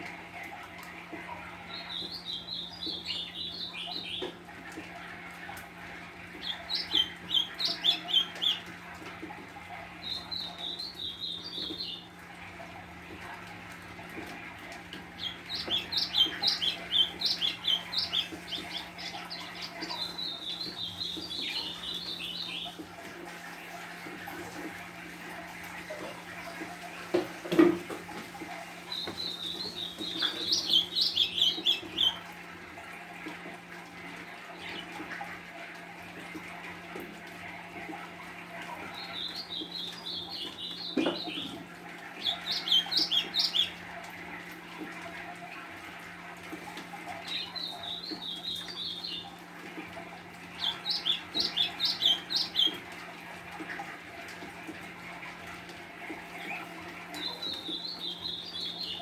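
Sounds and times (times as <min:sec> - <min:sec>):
bird twittering song: 0:01.7 - 0:04.4, 0:06.4 - 0:08.6, 0:10.0 - 0:12.1, 0:15.2 - 0:22.8, 0:28.8 - 0:32.2, 0:38.8 - 0:43.8, 0:47.2 - 0:49.3, 0:50.5 - 0:52.8, 0:56.4 - 0:59.0.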